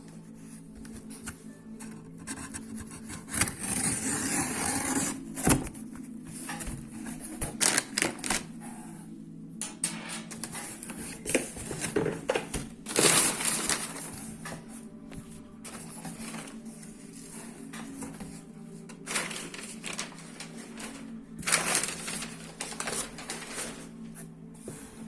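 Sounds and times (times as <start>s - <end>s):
packaging rubbing and rustling: 7.4s - 8.6s, 12.9s - 14.4s, 15.7s - 16.8s, 19.0s - 24.1s.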